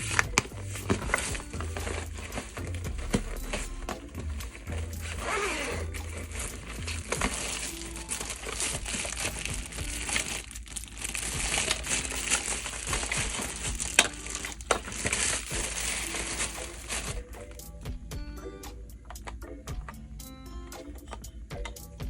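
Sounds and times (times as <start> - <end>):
plastic packaging crinkling: 0.0 - 17.4.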